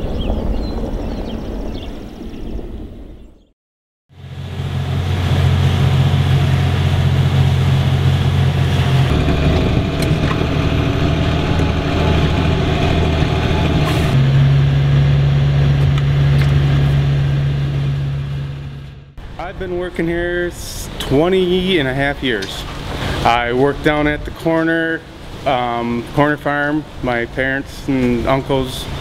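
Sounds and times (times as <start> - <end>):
engine low drone: 4.1 - 24.3.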